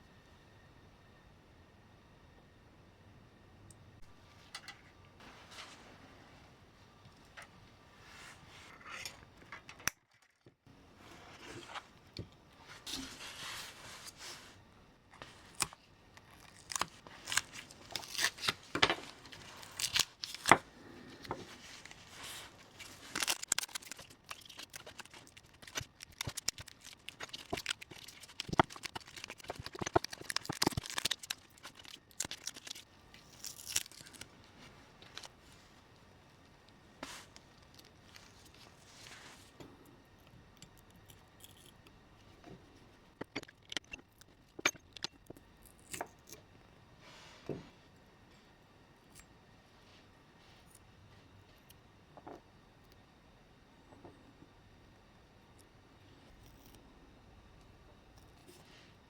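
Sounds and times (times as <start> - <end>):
hand-work scrapes and rustles: 11.0 - 11.9, 12.6 - 14.6, 16.8 - 32.8.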